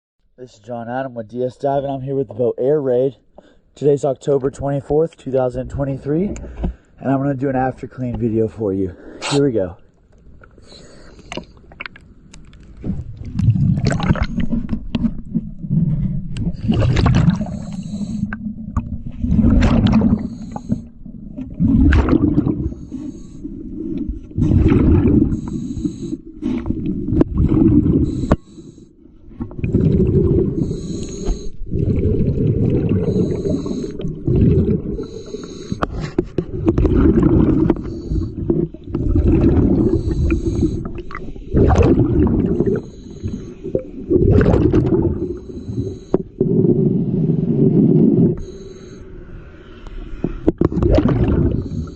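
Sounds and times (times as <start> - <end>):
bubbling underwater exhalations: 12.8 - 28.4, 29.3 - 48.6, 50.5 - 51.9.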